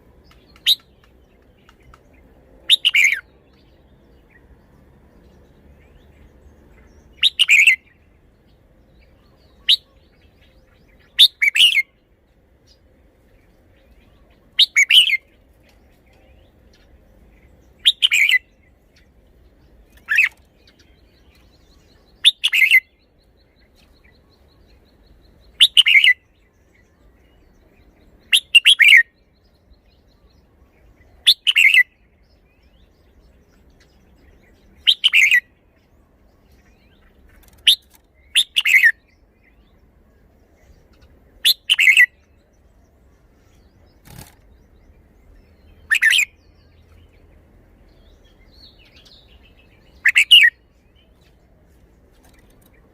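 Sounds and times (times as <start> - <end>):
bulbul singing whistled phrases: 7.0 - 8.1, 9.2 - 12.0, 14.6 - 15.3, 17.7 - 18.7, 20.0 - 29.2, 29.9 - 33.2, 34.0 - 35.6, 37.6 - 39.8, 40.9 - 42.6, 45.2 - 47.3, 47.9 - 51.1.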